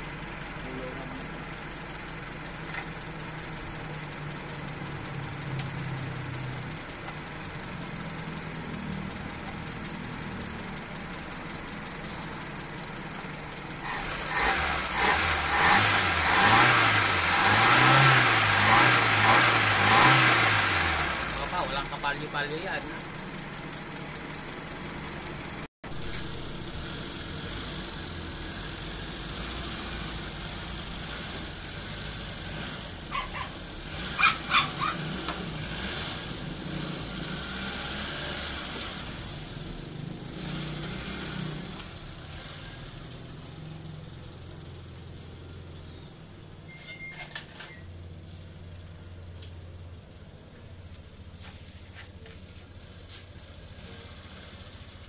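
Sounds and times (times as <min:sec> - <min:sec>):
car engine idling: 0:00.0 - 0:55.0
dog barking: 0:33.1 - 0:35.1.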